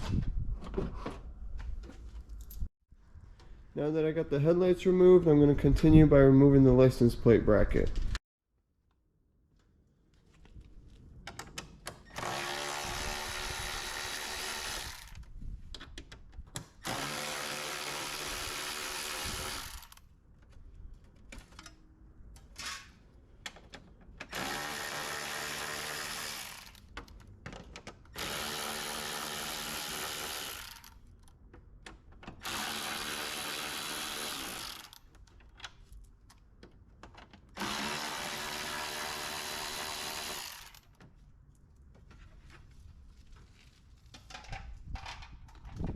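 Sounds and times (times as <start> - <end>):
electric drill-driver whirring: 12.1 - 15.2, 16.8 - 20.0, 24.3 - 26.8, 28.2 - 30.9, 32.4 - 35.0, 37.6 - 40.9.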